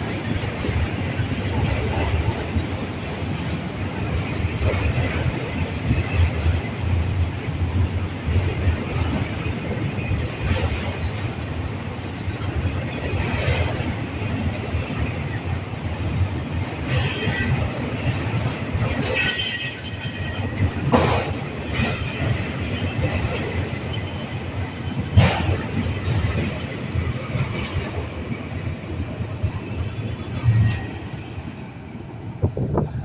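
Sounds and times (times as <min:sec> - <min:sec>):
train wheels rumbling on rail: 0:00.0 - 0:33.0
high wheel squeal: 0:16.8 - 0:18.2, 0:18.8 - 0:21.0, 0:21.6 - 0:24.8, 0:30.0 - 0:33.0.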